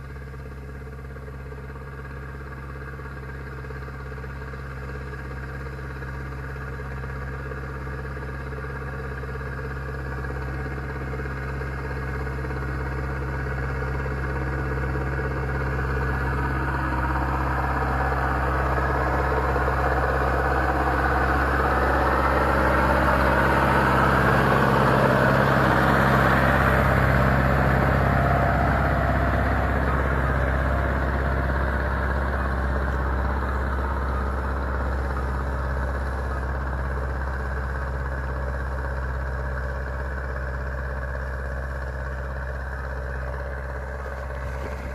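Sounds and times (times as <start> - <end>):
tractor diesel engine running: 0.0 - 44.9.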